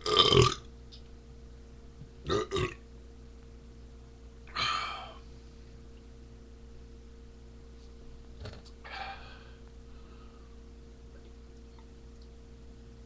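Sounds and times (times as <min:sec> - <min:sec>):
person burping: 0:00.0 - 0:00.6, 0:02.2 - 0:02.8.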